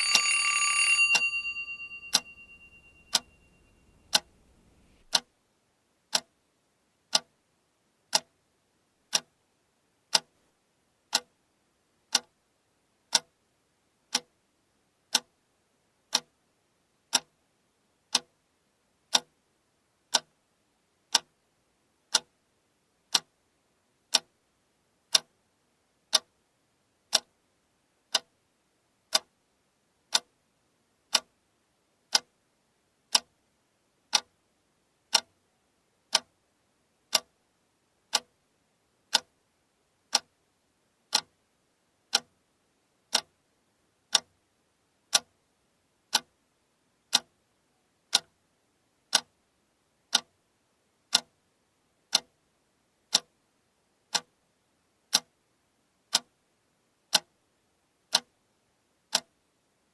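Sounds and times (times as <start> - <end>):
alarm clock ticking: 0.0 - 5.0.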